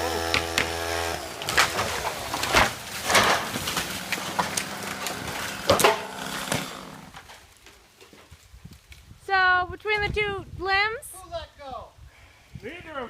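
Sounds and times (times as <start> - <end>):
tree cracking and falling: 0.0 - 9.2
branches crackling: 0.0 - 10.0.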